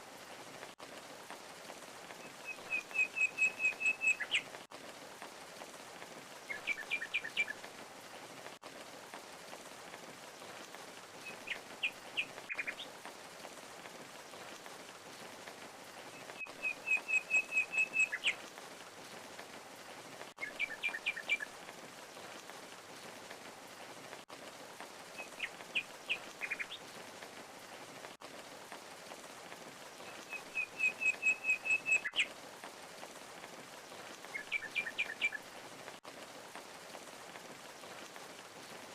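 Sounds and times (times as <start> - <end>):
small birds chirping: 2.2 - 4.6, 10.3 - 12.9, 16.2 - 18.5, 25.1 - 27.0, 29.9 - 32.3, 33.8 - 35.5.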